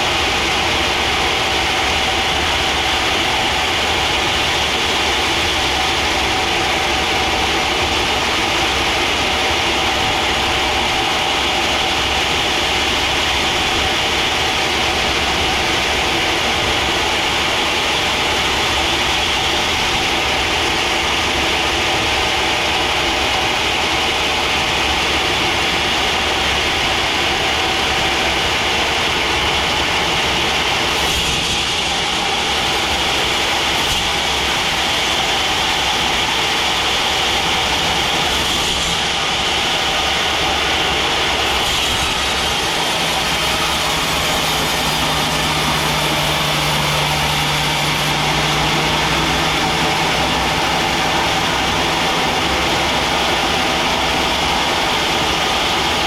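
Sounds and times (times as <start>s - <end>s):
band saw cutting a log: 24.6s - 56.0s.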